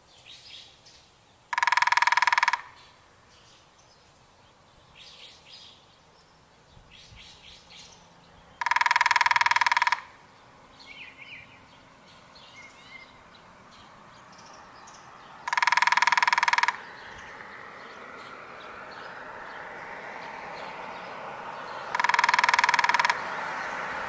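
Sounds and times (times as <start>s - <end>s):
woodpecker drumming: 1.5s - 3.0s, 8.6s - 10.3s, 15.0s - 17.9s, 21.6s - 24.0s.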